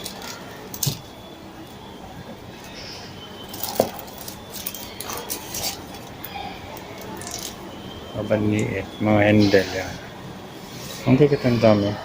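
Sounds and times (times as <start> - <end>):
small hard items clinking: 3.5 - 6.2.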